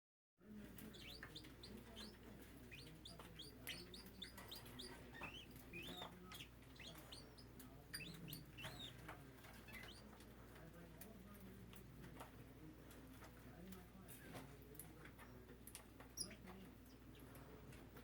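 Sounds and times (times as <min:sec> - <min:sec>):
parakeets chirping: 0:00.5 - 0:10.2, 0:16.0 - 0:17.3.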